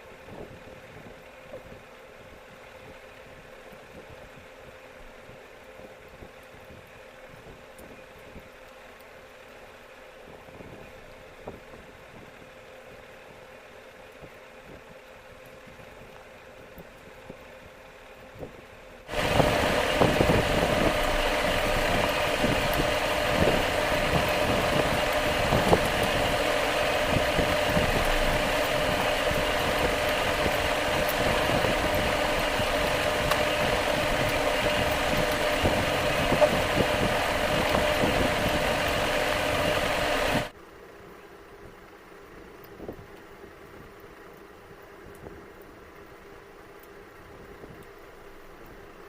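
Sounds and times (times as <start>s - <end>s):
motor humming: 19.0s - 40.5s.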